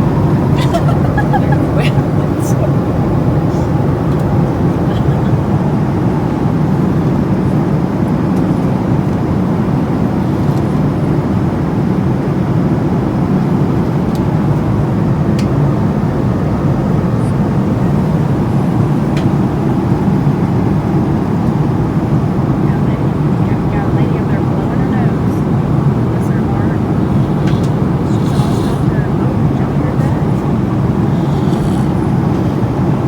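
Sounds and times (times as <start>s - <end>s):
airliner cabin rumble: 0.0s - 33.0s.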